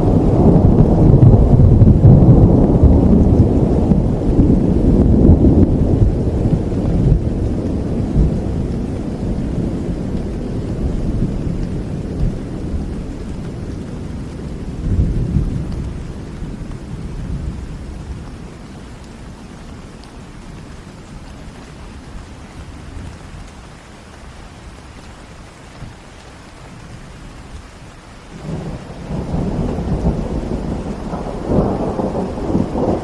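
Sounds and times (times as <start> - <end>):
thunder rolling: 0.0 - 18.5, 28.4 - 33.0
rain falling: 0.0 - 33.0.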